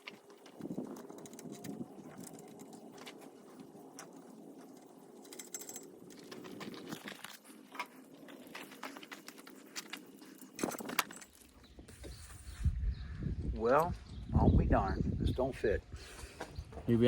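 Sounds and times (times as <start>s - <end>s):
metal parts clicking and rattling: 0.0s - 11.7s.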